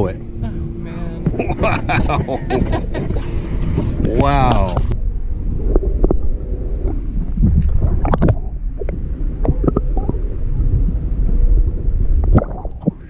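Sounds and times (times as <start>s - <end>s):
faint steady hum: 0.0s - 13.0s
wind buffeting microphone: 0.0s - 13.0s.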